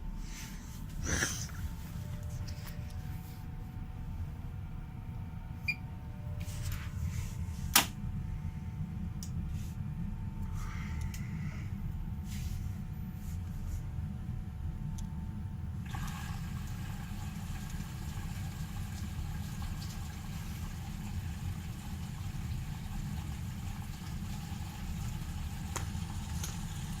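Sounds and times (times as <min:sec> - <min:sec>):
water rushing into washing machine: 0:15.8 - 0:27.0.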